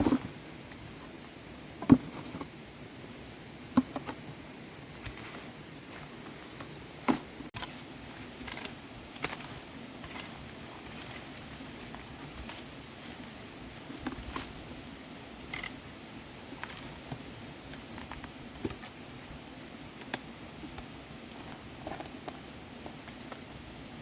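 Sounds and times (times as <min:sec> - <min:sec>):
insect calling: 0:01.8 - 0:18.4.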